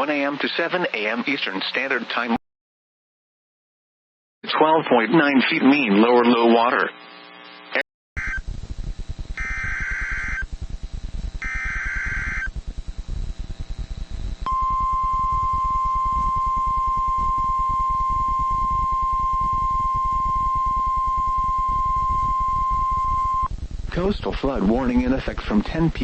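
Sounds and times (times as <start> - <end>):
crackling radio static: 4.5 - 26.0
screeching data bursts: 8.2 - 8.4, 9.4 - 10.6, 11.4 - 12.6
steady warning alarm tone: 9.4 - 10.5, 11.4 - 12.6, 14.4 - 23.5.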